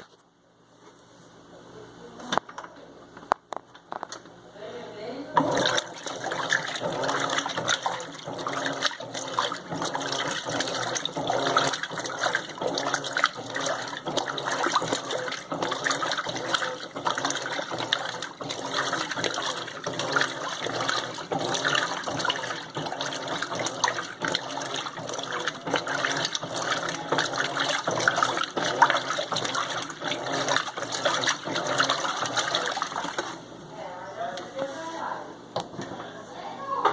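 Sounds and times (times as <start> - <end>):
water splashing in washing machine: 5.4 - 33.5.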